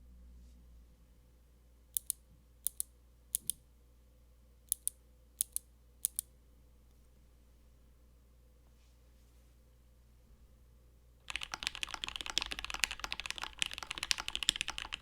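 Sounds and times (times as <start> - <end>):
mechanical keyboard keystrokes: 11.3 - 15.0.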